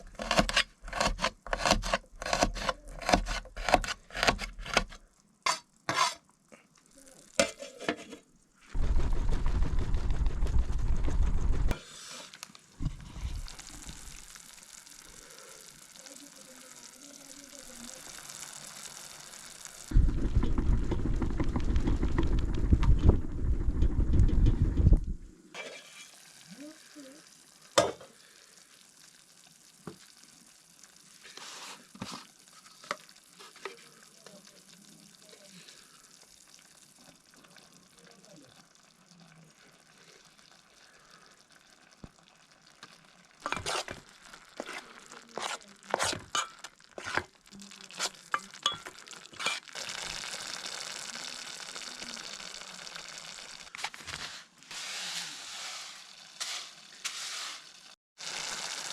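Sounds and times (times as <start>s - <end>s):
food sizzling in a pan: 5.0s - 8.8s, 11.7s - 20.0s, 25.5s - 58.9s.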